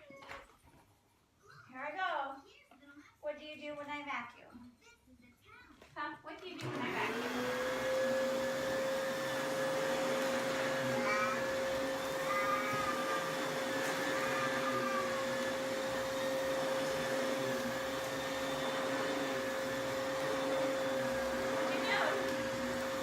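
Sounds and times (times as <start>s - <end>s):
vacuum cleaner running: 6.5s - 23.0s.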